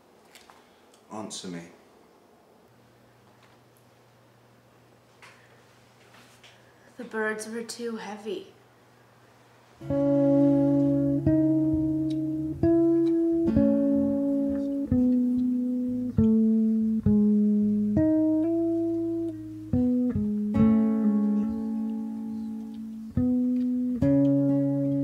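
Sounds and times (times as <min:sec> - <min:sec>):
slow plucked guitar music: 0:09.8 - 0:25.0.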